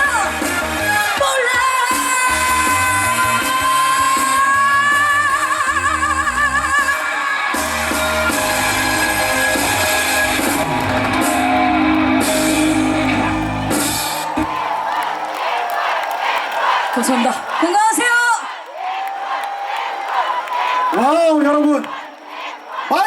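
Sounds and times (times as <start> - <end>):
backing band playing: 7.6 - 14.6.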